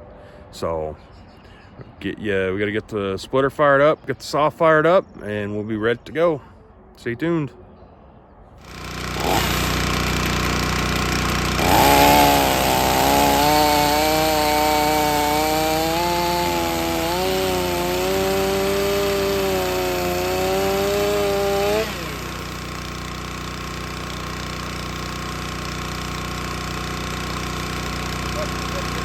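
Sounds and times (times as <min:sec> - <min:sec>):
chainsaw running: 0:08.6 - 0:29.0
log splitter engine running: 0:08.6 - 0:29.0.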